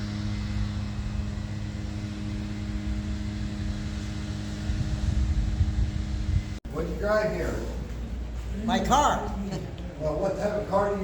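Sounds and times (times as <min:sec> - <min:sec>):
unsteady low rumble: 0:00.0 - 0:08.4
steady mechanical hum: 0:00.0 - 0:11.0.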